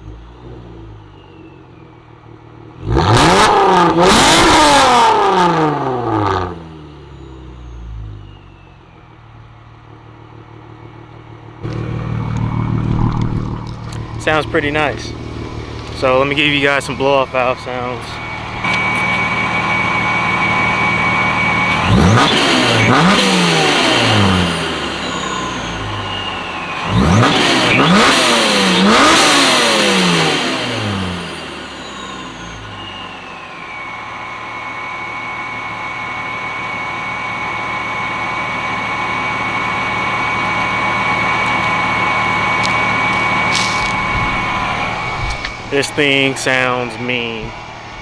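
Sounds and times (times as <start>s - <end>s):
car engine idling: 0.0s - 48.0s
engine revving: 2.6s - 8.4s, 11.6s - 48.0s.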